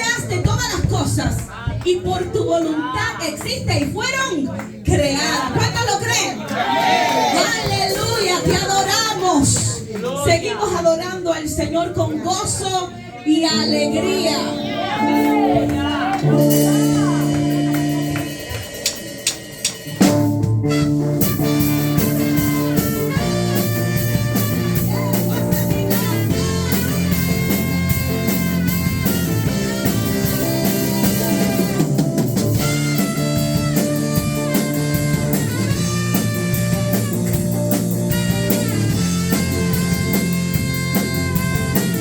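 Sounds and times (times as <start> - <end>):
drum kit: 0.0 - 2.6, 13.7 - 42.0
electric guitar: 13.7 - 42.0.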